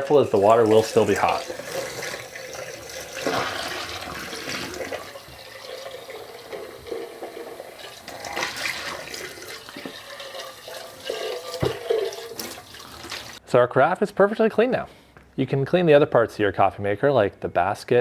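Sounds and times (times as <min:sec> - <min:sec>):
tap water running and splashing: 0:00.0 - 0:13.4.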